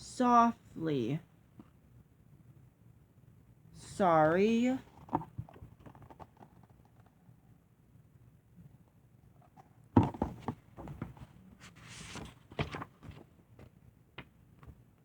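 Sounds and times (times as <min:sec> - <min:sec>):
book thump: 0:10.0 - 0:11.2, 0:12.0 - 0:14.3
knocks and rustling: 0:10.0 - 0:14.8
page turning swish: 0:11.6 - 0:13.2.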